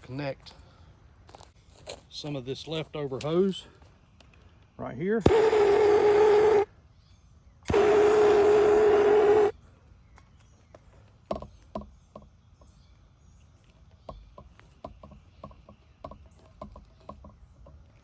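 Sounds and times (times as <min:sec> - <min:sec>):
hot-air blower whining: 0:05.3 - 0:06.7, 0:07.7 - 0:09.5
small clicks and knocks: 0:13.6 - 0:18.0.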